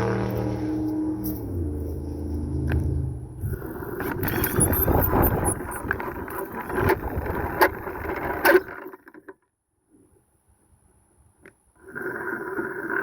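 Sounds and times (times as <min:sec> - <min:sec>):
pulley carriage rattling: 0:04.0 - 0:09.4.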